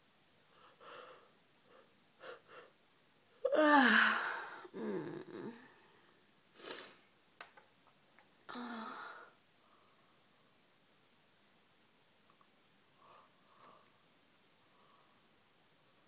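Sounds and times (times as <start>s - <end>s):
soft breaths: 0.4s - 2.8s, 8.5s - 10.7s, 12.9s - 16.0s
woman yawning: 3.5s - 5.7s, 8.5s - 9.3s.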